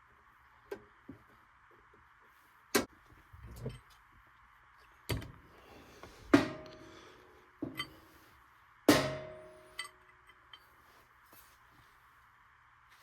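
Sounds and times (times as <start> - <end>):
ringing metallic clank: 8.9 - 10.0.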